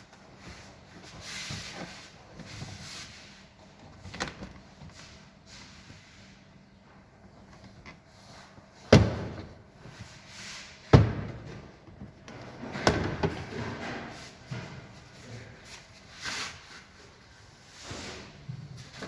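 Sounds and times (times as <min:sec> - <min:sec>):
knocks and clatter working on car: 0:08.8 - 0:09.7, 0:10.9 - 0:15.1.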